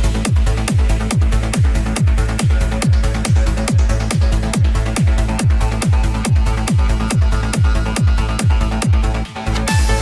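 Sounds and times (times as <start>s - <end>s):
kick drum: 0.0s - 10.0s
trance music: 0.0s - 10.0s
sustained synth chords: 9.3s - 10.0s.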